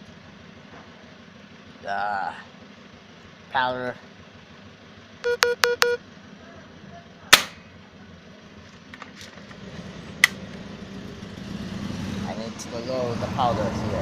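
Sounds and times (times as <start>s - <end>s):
low steady hum: 4.5s - 9.3s
quick electronic beeps: 5.2s - 6.0s.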